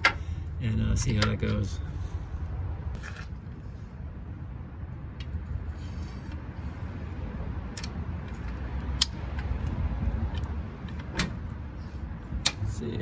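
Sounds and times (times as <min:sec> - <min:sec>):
steady low rumble: 0:00.0 - 0:13.0
car jack metal clicks: 0:12.4 - 0:12.6.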